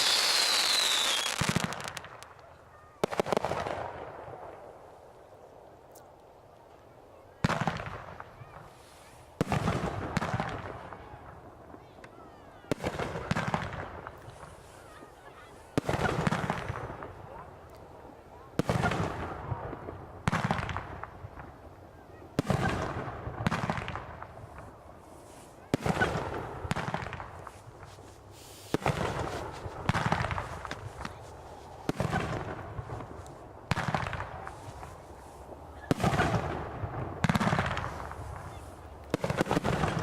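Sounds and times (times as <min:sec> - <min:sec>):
fireworks bursting: 0:00.0 - 0:04.6, 0:07.4 - 0:12.0, 0:12.6 - 0:17.4, 0:22.4 - 0:40.0.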